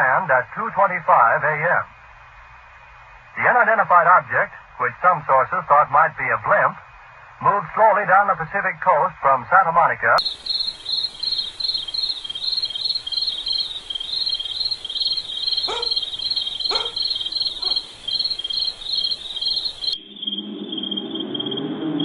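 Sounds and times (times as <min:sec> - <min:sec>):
crickets chirping: 0:10.2 - 0:22.0
low drone: 0:10.2 - 0:22.0.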